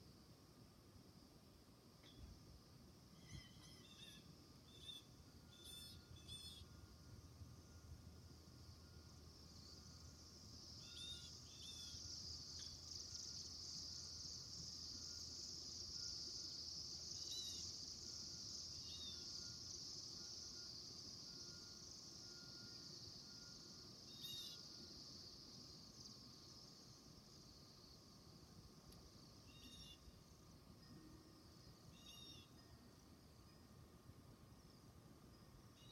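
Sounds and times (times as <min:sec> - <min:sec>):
high-pitched insect drone: 0:03.1 - 0:33.7
bird chirps: 0:03.2 - 0:06.7, 0:32.0 - 0:32.6.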